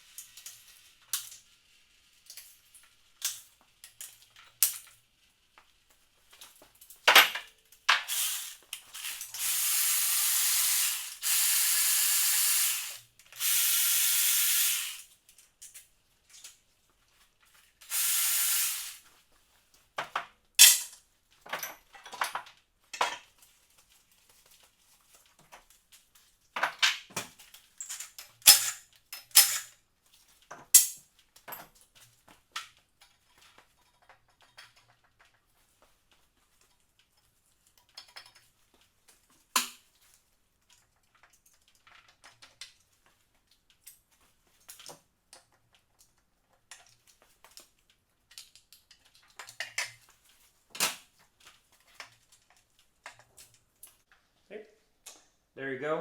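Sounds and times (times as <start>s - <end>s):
hissing spray bursts: 8.1s - 8.6s, 9.4s - 15.0s, 17.9s - 19.0s
tools clanking on metal: 20.6s - 22.4s.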